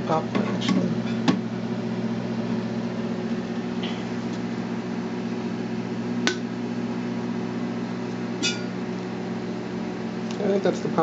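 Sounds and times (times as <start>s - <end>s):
microwave oven humming: 0.0s - 11.0s
popcorn kernels popping: 6.2s - 6.5s.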